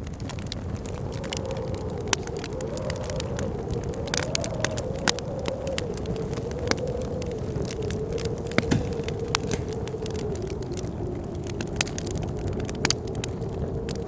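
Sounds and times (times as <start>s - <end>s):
blizzard wind howling: 0.0s - 14.0s
low wind rumble: 0.0s - 14.0s
wood fire crackling and popping: 0.0s - 14.0s.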